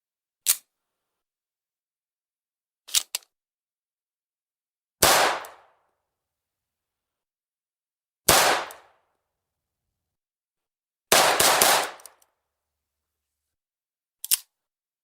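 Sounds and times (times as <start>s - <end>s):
pistol shots: 5.0s - 5.7s, 8.3s - 8.9s, 11.1s - 12.1s
pistol clicks: 5.2s - 5.6s, 11.3s - 12.3s.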